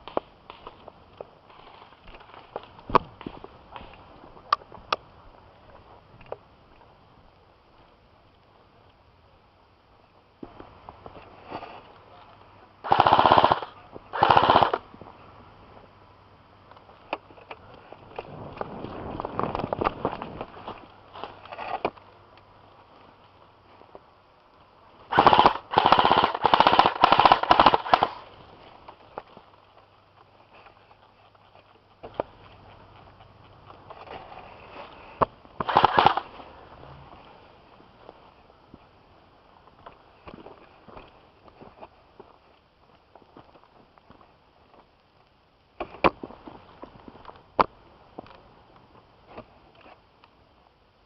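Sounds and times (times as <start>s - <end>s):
footsteps on rough ground: 0.0s - 6.5s, 16.6s - 50.1s
airsoft gun firing rapid clicks: 12.8s - 14.8s, 25.1s - 28.2s, 35.6s - 36.3s
loud sharp cracks: 12.8s - 14.8s, 25.1s - 28.2s, 35.6s - 36.3s.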